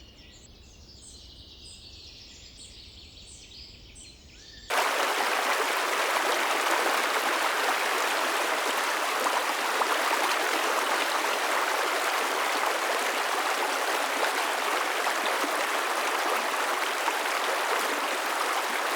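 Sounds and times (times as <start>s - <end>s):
stream water rushing: 4.7s - 18.9s.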